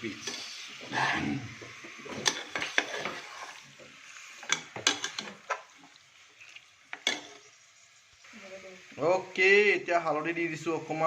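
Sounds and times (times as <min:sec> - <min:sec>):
chicken sizzling in a pan: 0:00.0 - 0:11.0
spatula knocking and scraping pan: 0:01.6 - 0:05.7.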